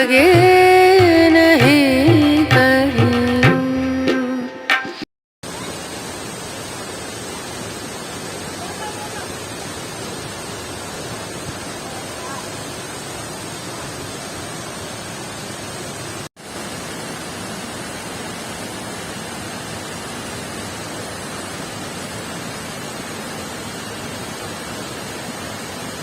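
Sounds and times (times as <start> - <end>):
waterfall rushing: 5.4 - 26.0.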